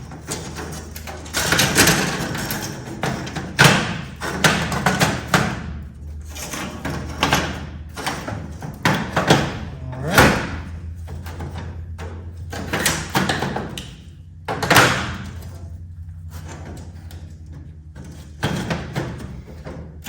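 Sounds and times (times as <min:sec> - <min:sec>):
metal parts thumping and clanking: 0:00.0 - 0:05.6, 0:06.2 - 0:15.6
steady low hum: 0:00.0 - 0:20.0.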